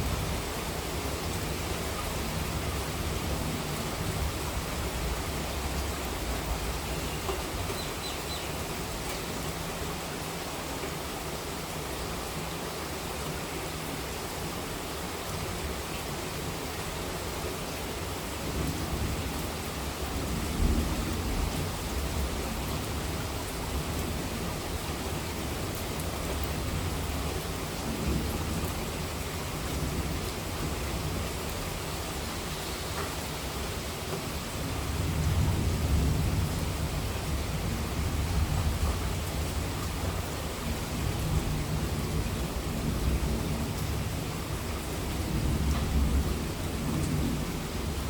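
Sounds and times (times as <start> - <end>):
steady rain hiss: 0.0 - 48.0
low rumble of thunder: 18.5 - 24.8, 34.6 - 48.0.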